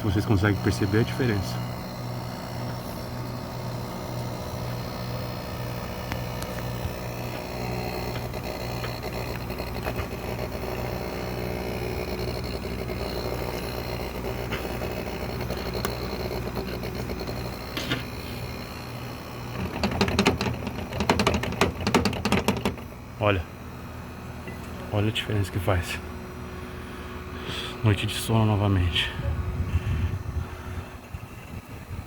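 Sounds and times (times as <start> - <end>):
air conditioner vibration hum: 0.0 - 32.0
small knocks: 6.1 - 10.4, 19.5 - 23.0.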